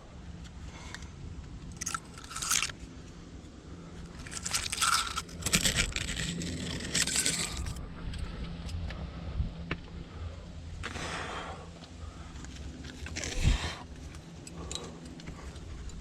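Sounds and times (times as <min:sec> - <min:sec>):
scraping and crunching against rock: 0:01.7 - 0:02.8, 0:04.1 - 0:07.8.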